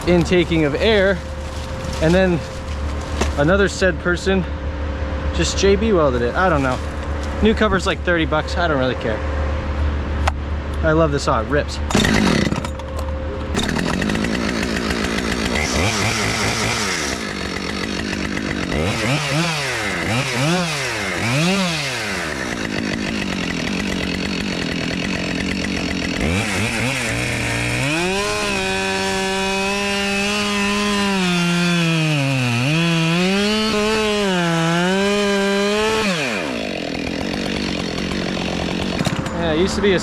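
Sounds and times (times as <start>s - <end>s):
chainsaw revving and cutting log: 0.0s - 3.8s, 11.9s - 12.8s, 13.5s - 40.0s.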